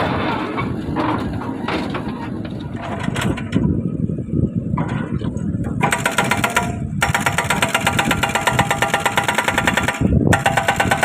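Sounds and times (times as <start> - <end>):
excavator diesel engine running: 0.0 - 11.0
hydraulic breaker hammering: 5.7 - 11.0.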